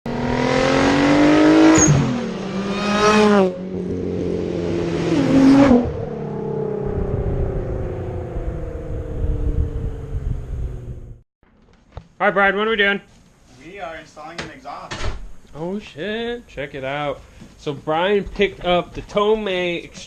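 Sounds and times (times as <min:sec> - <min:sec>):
car engine revving: 0:00.1 - 0:11.2.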